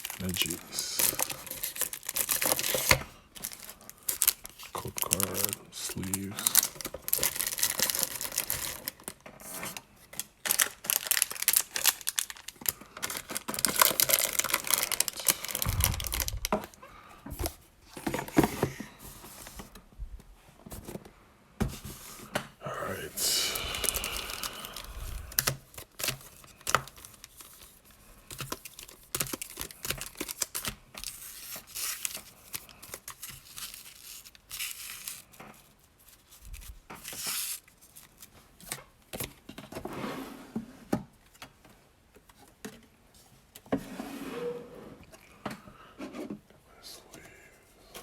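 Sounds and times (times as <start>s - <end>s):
foil packaging tearing and crinkling: 0.0s - 16.8s, 23.8s - 38.4s.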